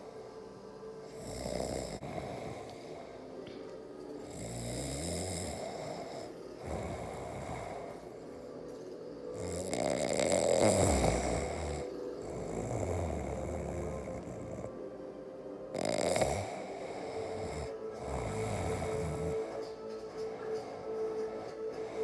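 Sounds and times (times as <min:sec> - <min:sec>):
man snoring: 0:01.0 - 0:03.2, 0:04.3 - 0:08.2, 0:09.3 - 0:14.9, 0:15.7 - 0:19.8.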